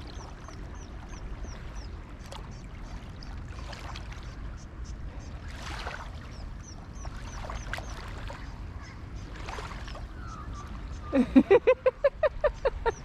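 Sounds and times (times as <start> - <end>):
low steady rumble: 0.0 - 13.0.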